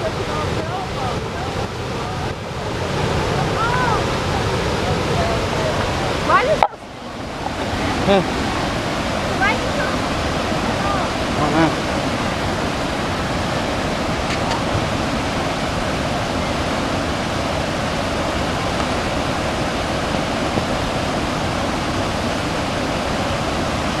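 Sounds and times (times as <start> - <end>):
river whitewater rushing loudly: 0.0 - 24.0.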